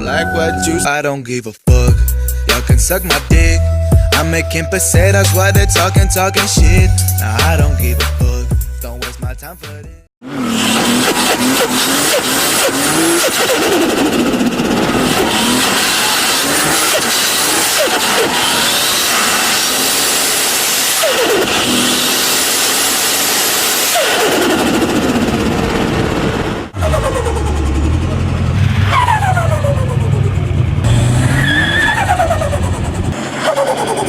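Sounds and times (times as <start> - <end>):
turbo whistle: 0.0 - 0.9
turbocharged car engine revving: 10.2 - 34.0.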